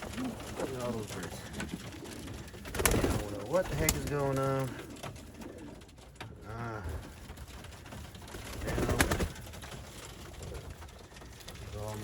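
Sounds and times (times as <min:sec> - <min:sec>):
pigeons cooing: 0:00.0 - 0:07.5.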